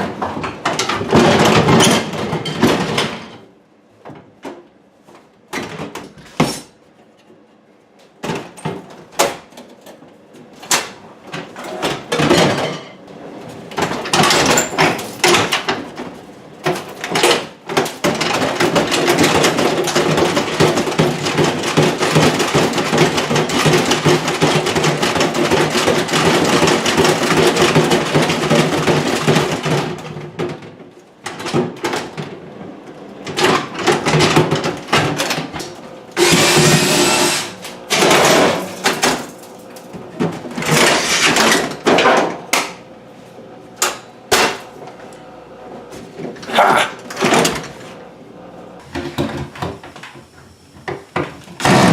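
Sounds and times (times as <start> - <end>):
rough noisy power tool: 36.1 - 39.6.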